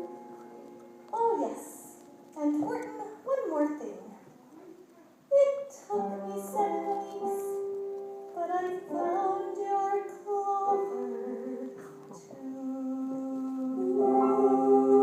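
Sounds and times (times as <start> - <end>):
keyboard accompaniment: 0.0 - 3.8, 4.4 - 15.0
woman singing long notes: 8.4 - 15.0.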